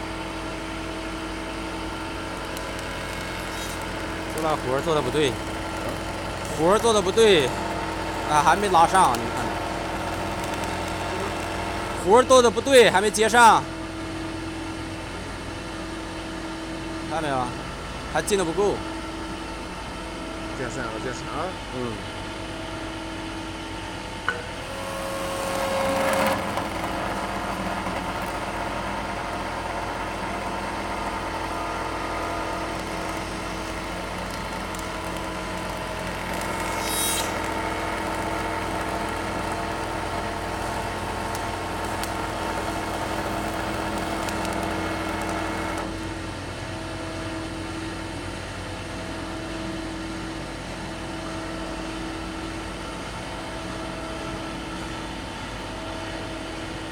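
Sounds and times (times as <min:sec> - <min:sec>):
machine motors humming: 0:00.0 - 0:16.3, 0:17.0 - 0:47.3
cutter cutting wood: 0:01.8 - 0:13.1, 0:24.4 - 0:46.0.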